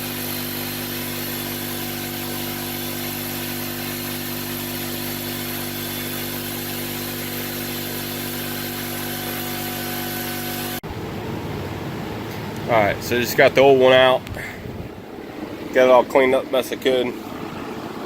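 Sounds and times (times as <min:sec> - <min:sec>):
motor droning: 0:00.0 - 0:18.0.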